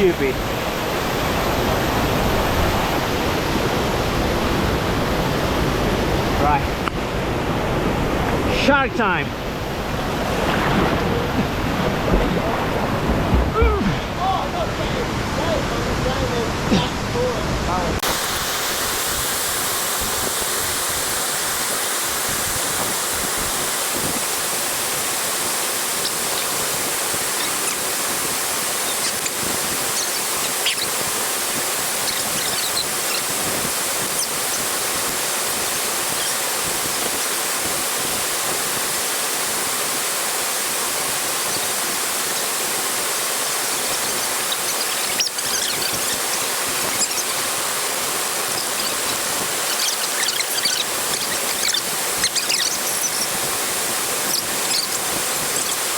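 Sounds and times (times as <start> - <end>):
waterfall rushing: 0.0 - 55.9
faint short high squeaks: 30.0 - 30.9, 31.5 - 33.3, 43.4 - 47.5, 48.5 - 53.6, 54.2 - 55.9.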